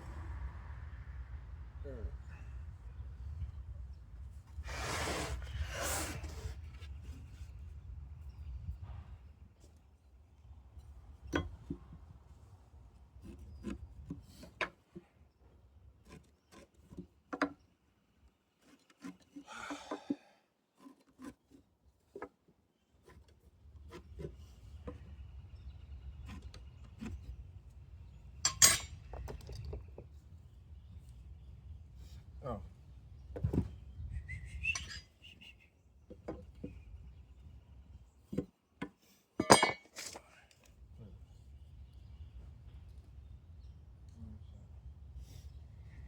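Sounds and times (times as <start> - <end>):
knocks and clicks of wood and tools: 16.0 - 17.7, 20.8 - 25.2.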